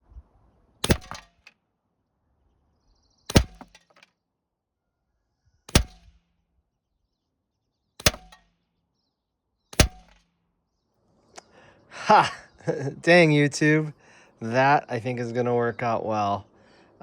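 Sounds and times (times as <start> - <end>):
air rifle shots: 0.8 - 1.5, 3.3 - 3.9, 5.7 - 6.2, 8.0 - 8.5, 9.8 - 10.3.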